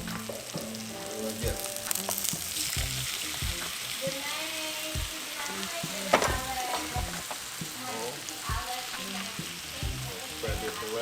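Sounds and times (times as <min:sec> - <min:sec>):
food sizzling in oil: 0:00.0 - 0:11.0
utensil knocking against pot: 0:06.1 - 0:07.5.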